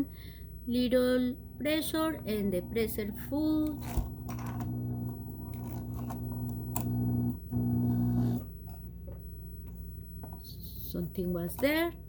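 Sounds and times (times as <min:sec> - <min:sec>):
sewing machine motor running: 0:02.0 - 0:08.4.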